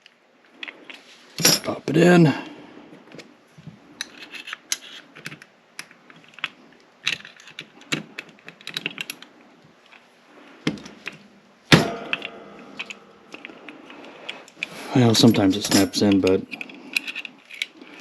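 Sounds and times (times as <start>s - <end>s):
metal lock parts clicking: 4.0s - 10.1s, 10.7s - 18.0s
metallic clack ringing: 11.7s - 13.6s.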